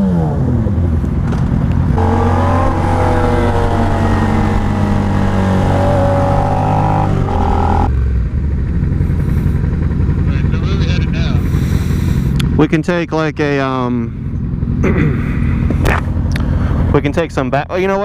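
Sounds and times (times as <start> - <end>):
motorcycle engine running: 0.5 - 17.1
higher steady tone: 2.0 - 7.9.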